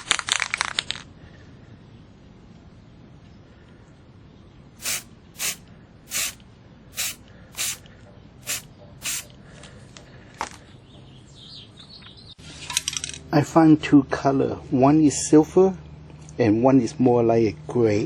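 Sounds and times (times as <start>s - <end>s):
spray can hissing bursts: 4.8s - 6.4s, 7.0s - 7.8s, 8.4s - 9.3s.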